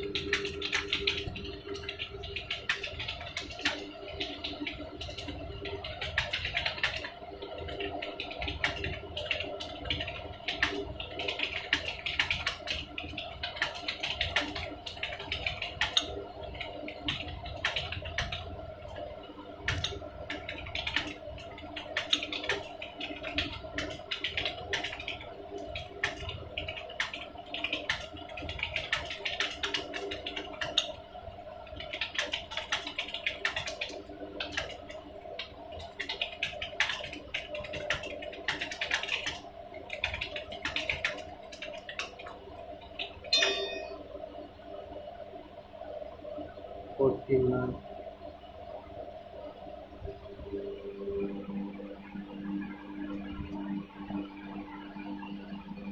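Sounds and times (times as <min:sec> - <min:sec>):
steady hum: 0:00.0 - 0:25.0, 0:42.4 - 0:55.9
fast typing on keyboard: 0:00.0 - 0:31.0, 0:31.7 - 0:42.4.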